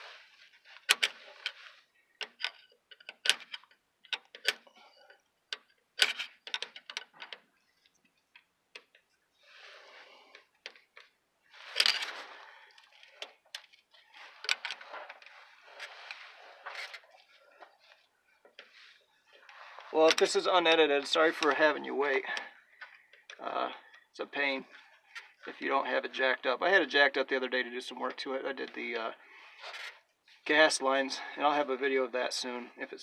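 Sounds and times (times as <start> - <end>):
scraping and rustling: 0.0 - 21.6.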